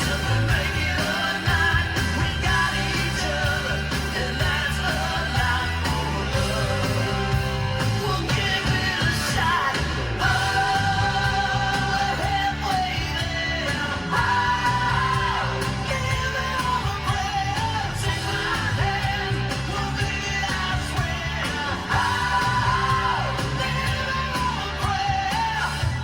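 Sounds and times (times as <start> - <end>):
song playing through car speakers: 0.0 - 26.0.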